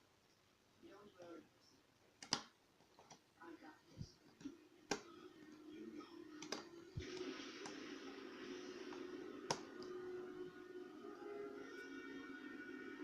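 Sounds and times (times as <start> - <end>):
low hum: 4.4 - 13.0.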